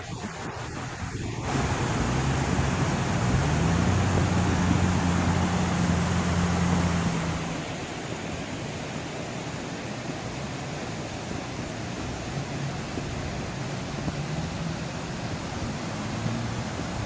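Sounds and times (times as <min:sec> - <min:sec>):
water rushing: 0:00.0 - 0:17.0.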